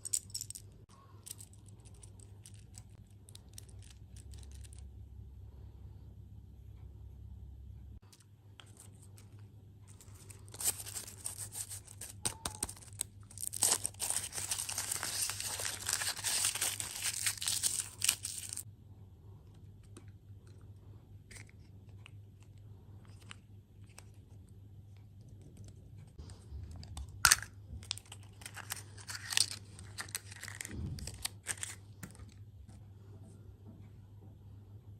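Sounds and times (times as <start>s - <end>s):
plastic packaging crinkling: 9.9s - 18.6s, 27.2s - 32.4s.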